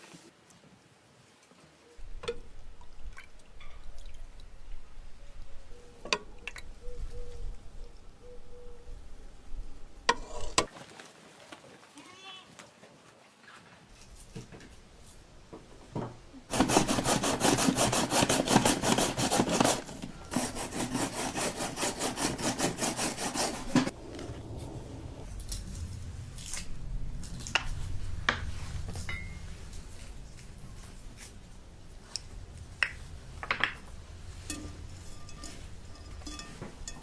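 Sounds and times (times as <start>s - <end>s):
rasping scraping strokes: 16.5s - 24.0s.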